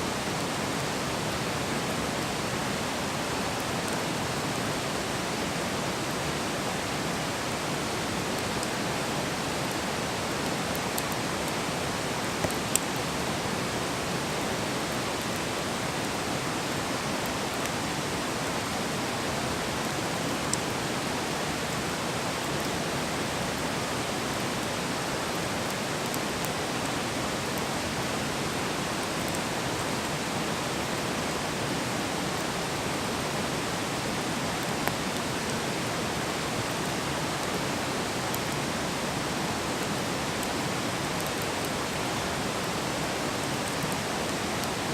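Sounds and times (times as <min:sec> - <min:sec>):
campfire burning: 0:05.0 - 0:21.7.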